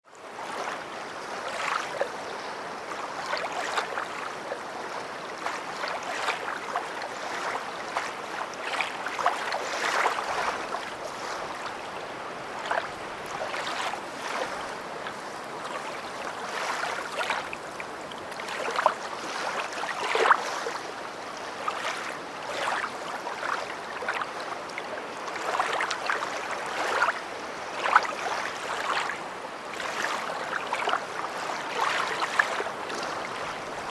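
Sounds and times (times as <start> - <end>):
lake waves lapping on shore: 0.1 - 33.9.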